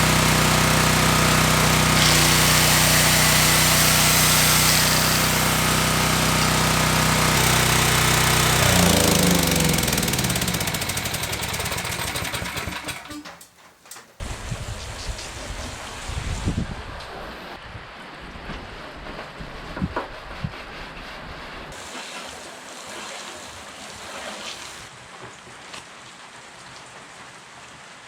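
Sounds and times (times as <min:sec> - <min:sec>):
generator engine running: 0:00.0 - 0:13.2.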